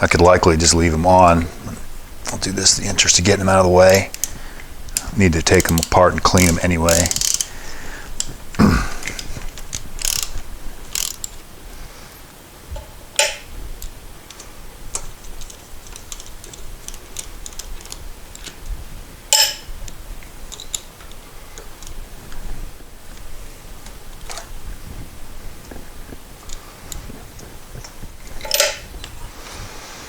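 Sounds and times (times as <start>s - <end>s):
ratchet wrench clicking: 4.9s - 7.5s, 9.1s - 11.4s
metal tools clinking: 28.3s - 29.0s.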